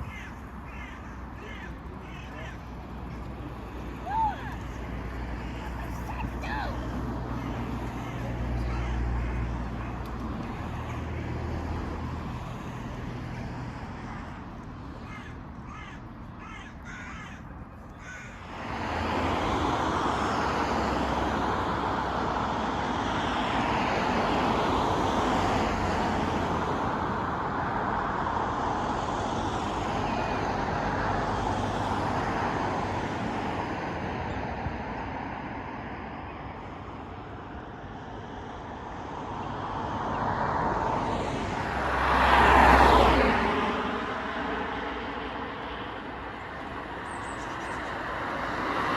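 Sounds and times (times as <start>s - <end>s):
crows cawing: 0.0s - 2.7s, 7.4s - 11.5s, 13.8s - 18.4s
loud steady rushing noise: 0.0s - 47.0s.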